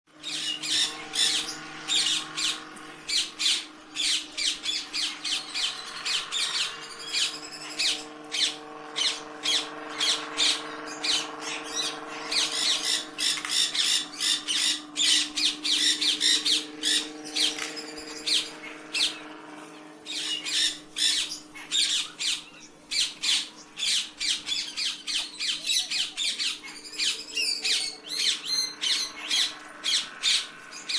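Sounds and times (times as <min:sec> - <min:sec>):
steady low hum: 0:00.1 - 0:30.9
parrot squawking: 0:00.2 - 0:17.6, 0:18.2 - 0:19.3, 0:20.1 - 0:30.9.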